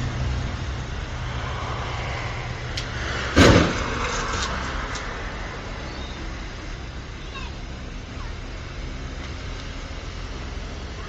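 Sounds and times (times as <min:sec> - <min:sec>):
car engine rumbling: 0:00.0 - 0:11.0
loud sharp thump: 0:03.3 - 0:04.1.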